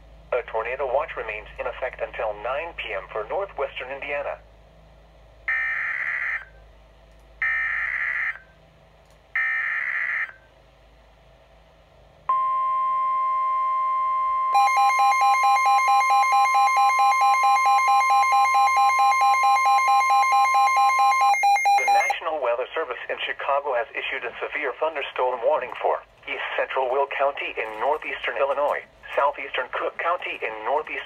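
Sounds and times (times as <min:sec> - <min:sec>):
steady warning alarm tone: 0:05.5 - 0:06.6, 0:07.4 - 0:08.5, 0:09.4 - 0:10.5, 0:12.3 - 0:22.2
rapidly pulsing electronic beep: 0:14.1 - 0:22.2
screeching digital header bursts: 0:14.6 - 0:22.1.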